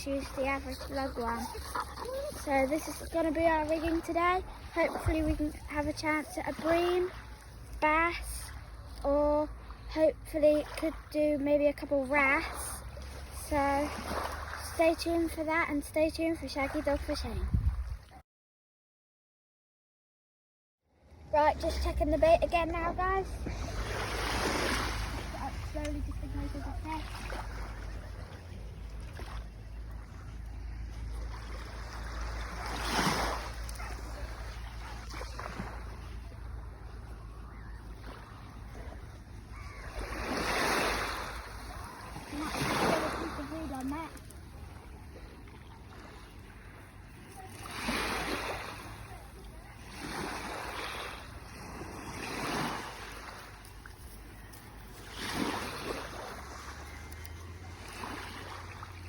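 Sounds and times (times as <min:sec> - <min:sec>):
sea waves washing on shore: 0:00.0 - 0:18.0, 0:21.3 - 0:59.0
wind rumbling on microphone: 0:17.2 - 0:18.2.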